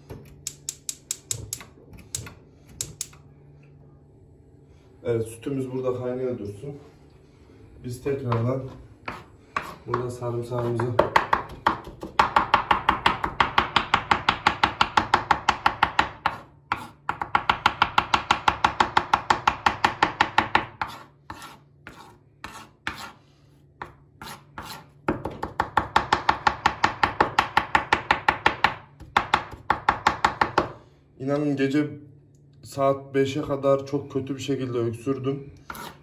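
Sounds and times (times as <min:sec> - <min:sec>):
knife chopping garlic: 0:09.0 - 0:23.2, 0:23.8 - 0:30.8, 0:35.7 - 0:36.0.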